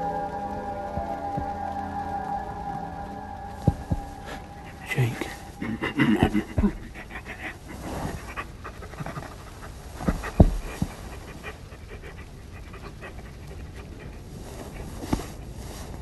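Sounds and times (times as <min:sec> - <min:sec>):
soft thumps: 0:03.5 - 0:04.6, 0:07.8 - 0:11.5
dog panting: 0:03.7 - 0:16.0.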